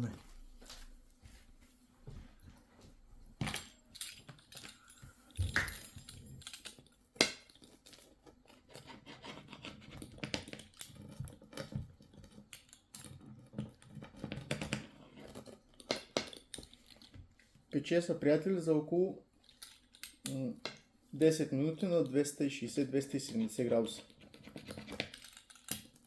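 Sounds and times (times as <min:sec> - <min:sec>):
kitchen items clicking: 0:03.5 - 0:17.1.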